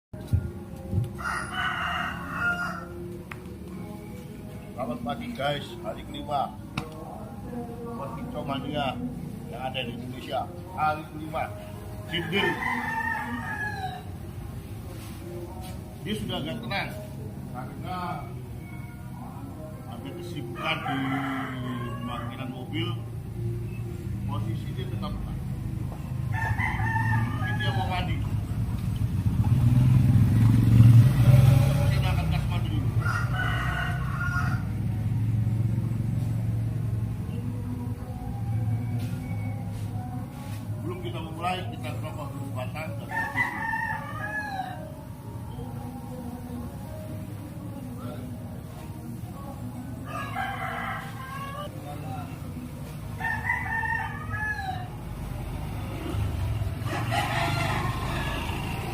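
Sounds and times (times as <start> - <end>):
rooster crowing: 1.1 - 3.1, 12.0 - 14.2, 20.5 - 22.7, 26.3 - 28.3, 32.9 - 35.0, 43.0 - 45.1, 50.0 - 51.8, 53.1 - 55.4, 56.7 - 58.9.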